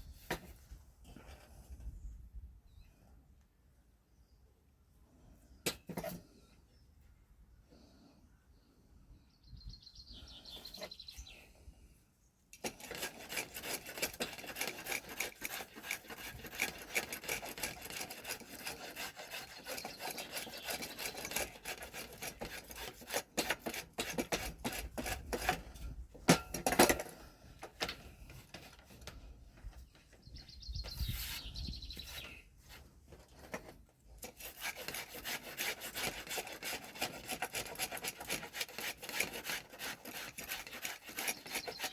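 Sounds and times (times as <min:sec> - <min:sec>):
sanding wood rasp: 0:12.6 - 0:25.6, 0:34.2 - 0:41.9.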